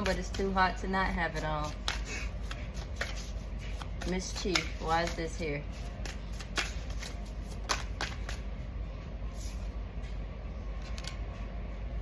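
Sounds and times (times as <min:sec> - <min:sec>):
steady background hum: 0:00.0 - 0:12.0
cards flicking and snapping: 0:06.0 - 0:08.5.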